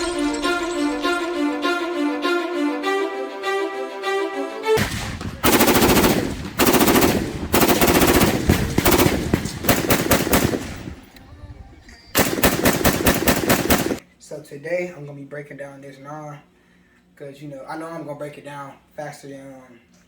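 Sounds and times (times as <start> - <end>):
automatic gunfire bursts: 4.8 - 11.2, 12.2 - 14.0.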